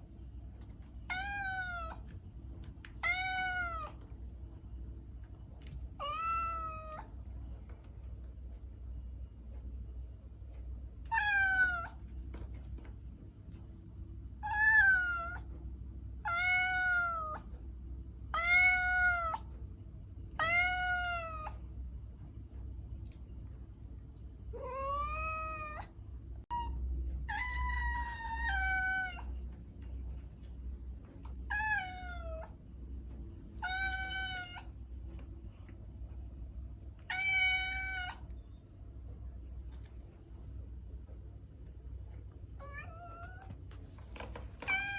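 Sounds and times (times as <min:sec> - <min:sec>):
steady low hum: 0:00.0 - 0:44.9
cat meowing: 0:01.1 - 0:02.1, 0:03.0 - 0:04.0, 0:06.0 - 0:07.1, 0:11.1 - 0:12.0, 0:14.4 - 0:15.5, 0:16.2 - 0:17.5, 0:18.3 - 0:19.5, 0:20.4 - 0:21.6, 0:24.6 - 0:25.9, 0:26.5 - 0:29.4, 0:31.5 - 0:32.5, 0:33.6 - 0:34.7, 0:37.0 - 0:38.2, 0:42.6 - 0:43.6, 0:44.6 - 0:44.9.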